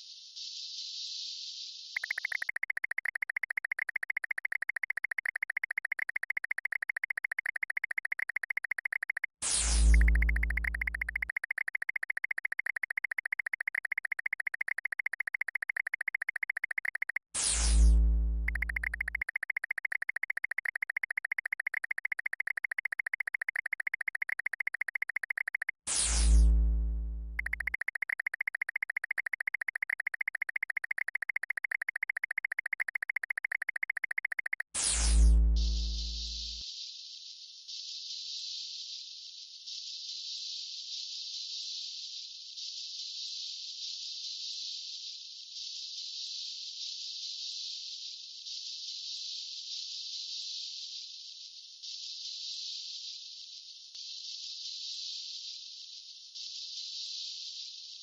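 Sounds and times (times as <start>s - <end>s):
high buzzing electronic chirp: 2.0s - 36.6s
electronic zap dropping into boom: 34.8s - 36.6s.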